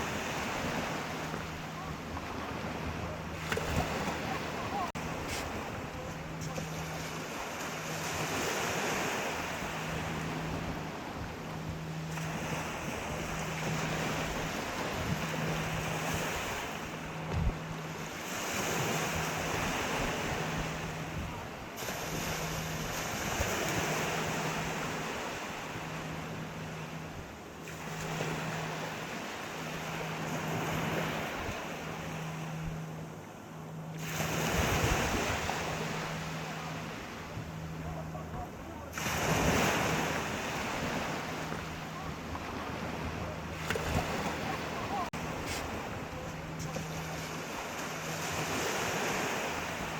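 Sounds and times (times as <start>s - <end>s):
wind buffeting microphone: 0.0s - 24.5s
faint pulsing low hum: 0.0s - 49.9s
sea waves breaking on shore: 0.0s - 49.9s.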